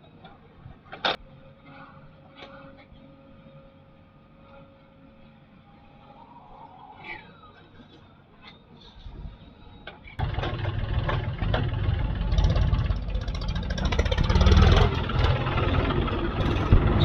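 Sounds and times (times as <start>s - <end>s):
heavy diesel engine running: 10.2s - 17.0s.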